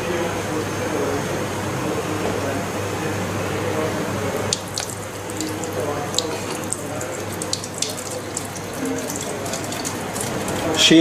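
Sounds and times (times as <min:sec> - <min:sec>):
tap water running and splashing: 0:03.7 - 0:11.0.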